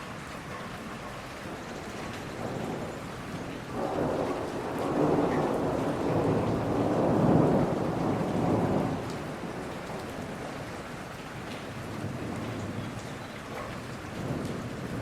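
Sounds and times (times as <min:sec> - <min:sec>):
steady rain in a forest: 0:00.0 - 0:15.0
thunder rumble: 0:01.5 - 0:11.1.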